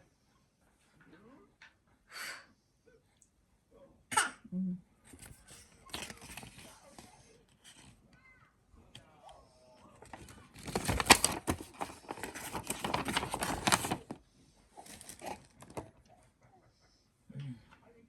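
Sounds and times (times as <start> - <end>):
packaging rustling and crinkling: 5.2 - 7.9, 10.0 - 14.2, 14.8 - 15.9.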